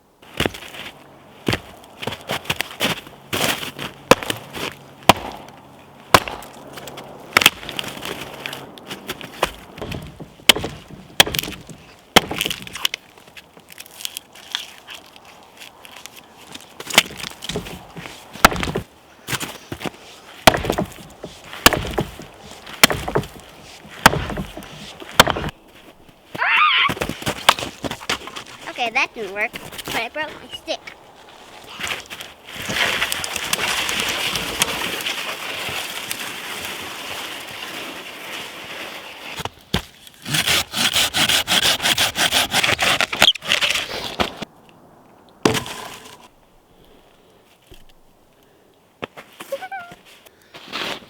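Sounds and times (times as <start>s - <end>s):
wood cracking and knocking: 9.2s - 14.2s, 16.9s - 18.9s, 20.4s - 25.6s.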